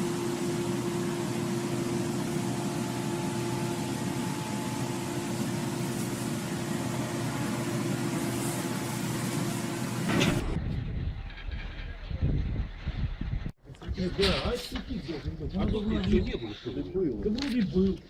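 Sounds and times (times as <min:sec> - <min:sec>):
machine hum: 0:00.0 - 0:10.6.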